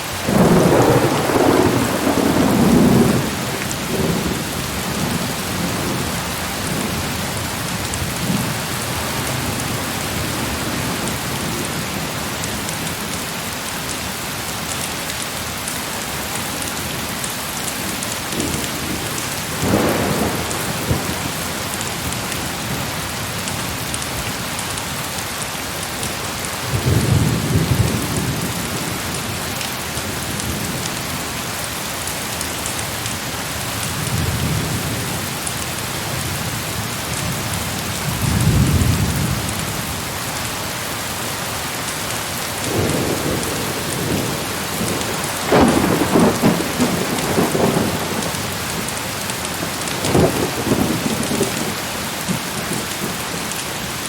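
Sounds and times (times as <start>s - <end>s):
heavy rain pouring: 0.0s - 54.0s
distant thunder rumbling: 0.3s - 7.2s, 18.3s - 22.1s, 42.6s - 53.4s.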